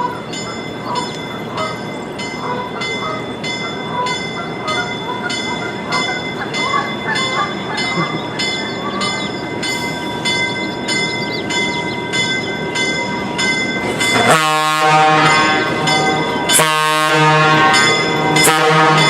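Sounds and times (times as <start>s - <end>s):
locomotive bell ringing: 0.0s - 19.0s
train horn blast: 14.0s - 19.0s.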